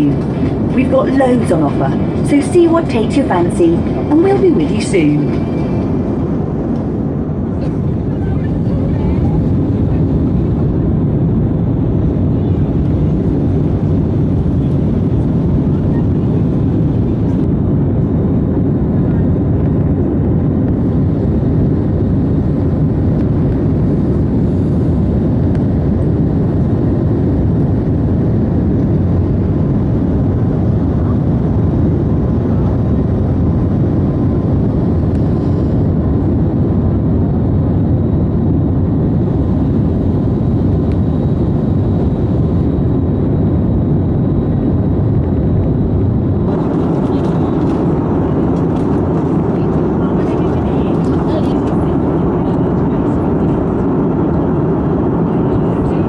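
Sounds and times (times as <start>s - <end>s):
airliner cabin rushing noise: 0.0s - 17.4s, 46.4s - 53.6s.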